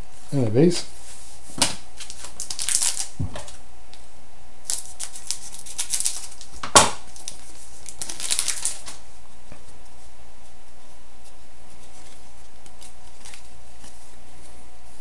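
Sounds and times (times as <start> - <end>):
foil wrappers crinkling: 2.0 - 3.6, 4.6 - 9.0, 11.7 - 14.2.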